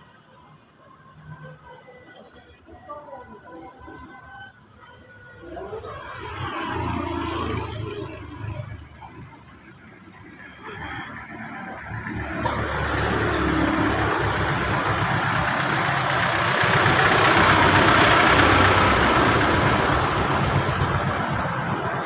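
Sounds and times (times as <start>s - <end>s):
motor vehicle passing: 5.4s - 22.0s.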